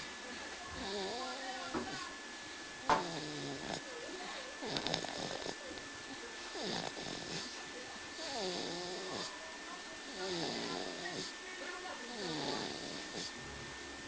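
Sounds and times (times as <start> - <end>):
person snoring: 8.2 - 9.3, 12.1 - 13.4.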